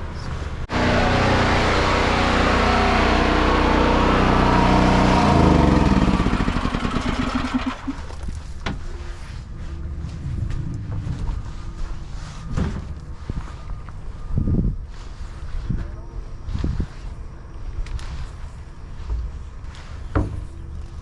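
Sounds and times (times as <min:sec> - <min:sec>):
engine running and winding down: 0:00.7 - 0:08.2.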